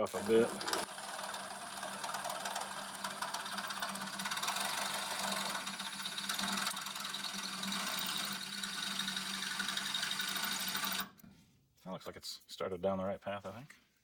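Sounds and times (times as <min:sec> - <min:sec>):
welding arc crackling: 0:00.0 - 0:06.7.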